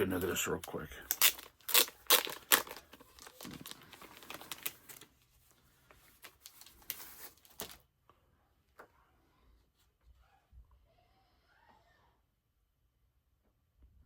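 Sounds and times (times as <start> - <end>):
comic book pages rustling: 0.1 - 7.9.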